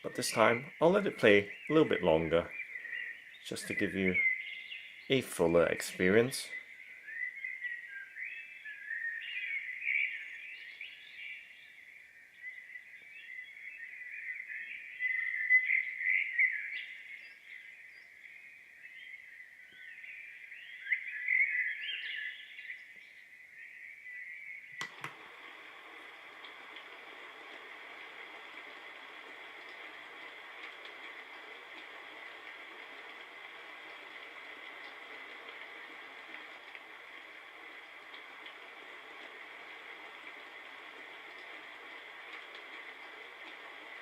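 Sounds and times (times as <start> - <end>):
birdsong from small speaker: 0.0 - 44.0
steady rushing noise: 24.9 - 44.0.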